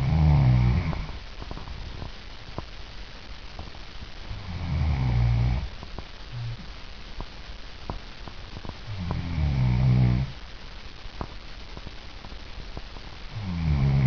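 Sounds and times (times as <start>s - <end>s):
woman snoring: 0.0s - 1.2s, 4.3s - 5.7s, 6.3s - 6.6s, 8.9s - 10.3s, 13.3s - 14.0s.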